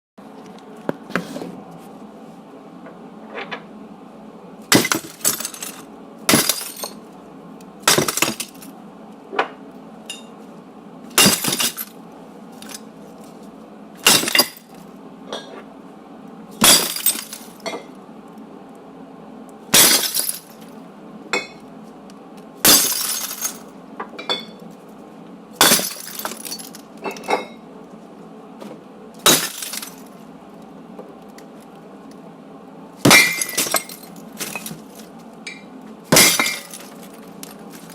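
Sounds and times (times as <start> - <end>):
glass smashing: 4.7 - 7.0, 7.9 - 8.7, 11.2 - 11.9, 14.0 - 14.7, 16.6 - 17.6, 19.8 - 20.5, 22.6 - 23.6, 25.6 - 27.3, 29.2 - 30.1, 33.0 - 35.0, 36.1 - 37.9.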